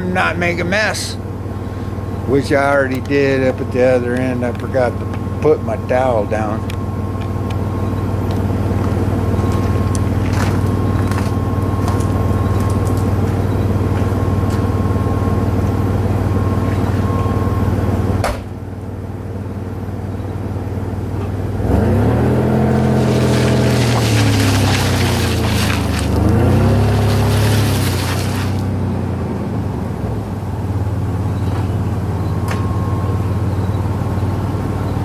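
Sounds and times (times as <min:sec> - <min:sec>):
engine running steadily: 0:00.0 - 0:35.0
engine revving: 0:21.5 - 0:35.0.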